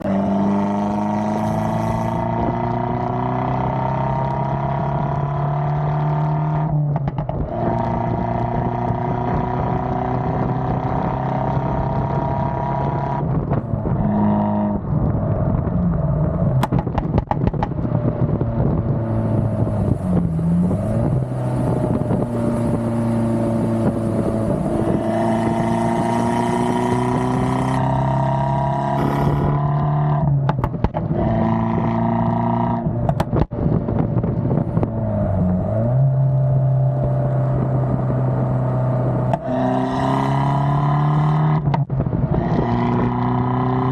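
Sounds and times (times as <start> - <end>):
car engine accelerating: 0.0 - 43.9
exhaust crackles and pops: 14.8 - 25.6, 29.0 - 31.3, 32.9 - 35.0, 41.6 - 43.1.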